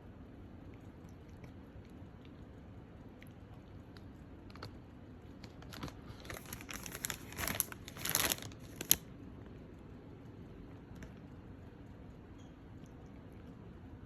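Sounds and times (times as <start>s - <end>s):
plastic chip packet crinkling: 5.4s - 9.1s.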